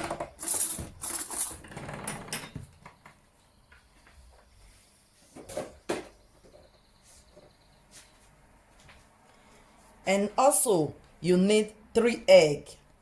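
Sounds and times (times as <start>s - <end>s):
kitchen containers clattering: 0.0s - 2.7s.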